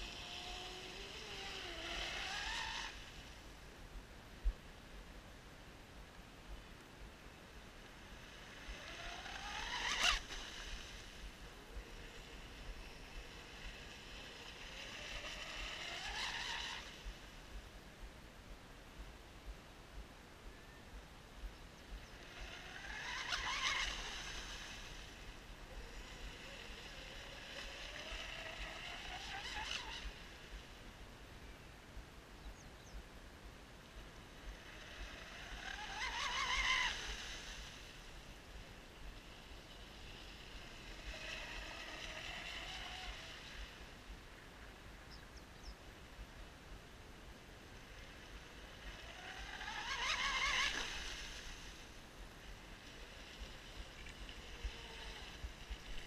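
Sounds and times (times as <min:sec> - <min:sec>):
electric boat motor whining: 0:00.0 - 0:03.5, 0:07.9 - 0:17.5, 0:21.9 - 0:30.9, 0:33.9 - 0:44.7, 0:47.7 - 0:56.0.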